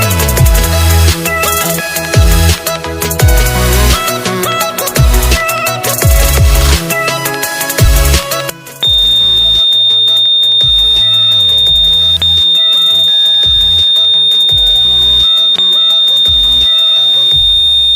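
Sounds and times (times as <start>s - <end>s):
electronic background music: 0.0s - 17.9s
high-pitched alarm buzzer tone: 8.8s - 17.9s.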